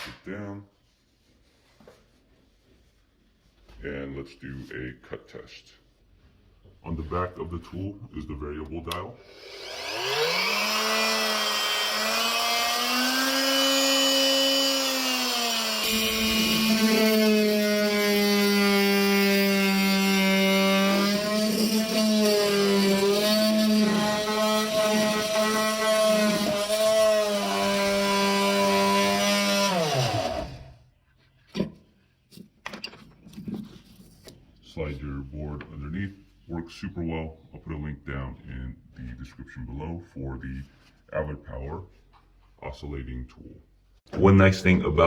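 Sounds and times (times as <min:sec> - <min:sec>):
oscillating multi-tool cutting wood: 0:09.2 - 0:30.8.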